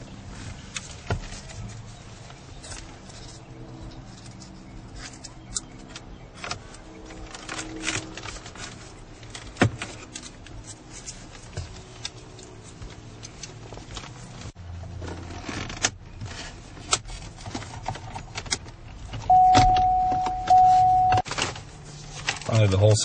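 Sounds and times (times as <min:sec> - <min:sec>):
loud steady beep: 0:19.3 - 0:21.2.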